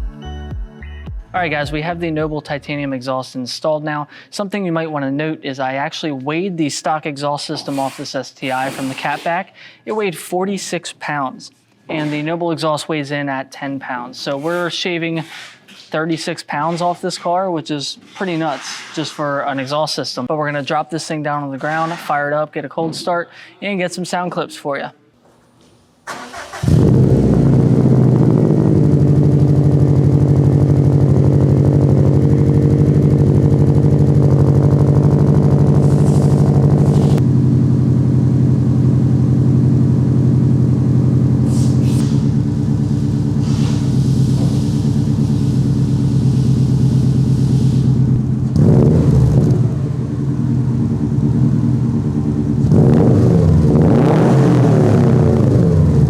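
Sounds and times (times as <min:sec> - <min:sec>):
car engine starting and idling: 0:26.0 - 0:56.0.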